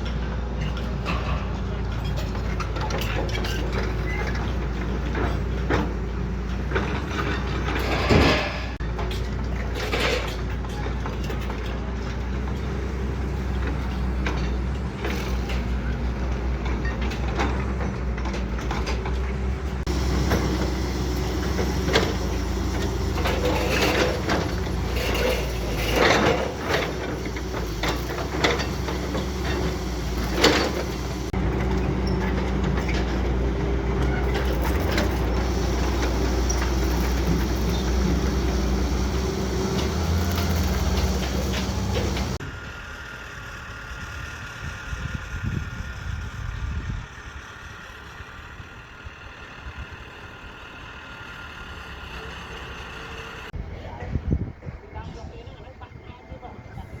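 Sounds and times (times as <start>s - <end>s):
heavy machine engine running: 0.0s - 53.7s
metallic clanks and knocks: 0.6s - 42.4s.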